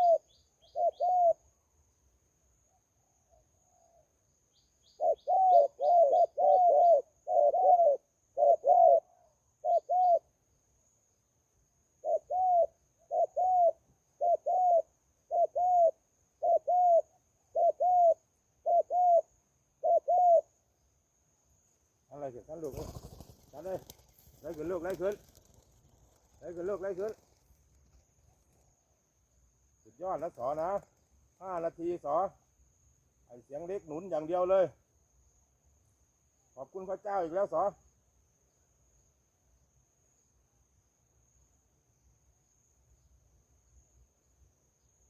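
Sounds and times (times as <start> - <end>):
doves cooing: 0.0 - 0.2, 0.8 - 1.4, 5.0 - 10.3, 12.0 - 20.5.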